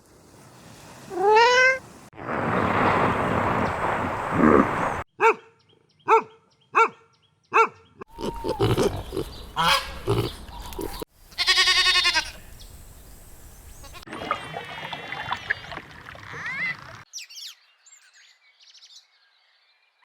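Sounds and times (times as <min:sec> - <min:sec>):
mixed animal sounds: 0:04.3 - 0:12.6
animal barks: 0:04.4 - 0:11.0
long quavering bleat: 0:08.1 - 0:12.4.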